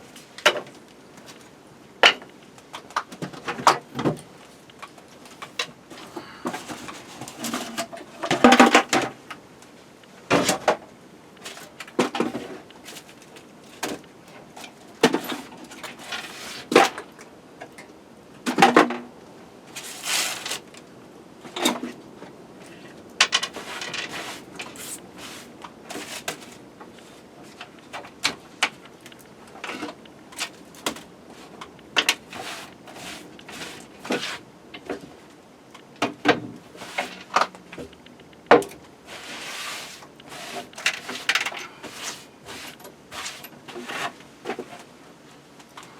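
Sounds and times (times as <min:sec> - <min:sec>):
objects clattering: 0:05.3 - 0:09.2, 0:23.2 - 0:35.0
objects knocking and clicking: 0:23.2 - 0:25.0.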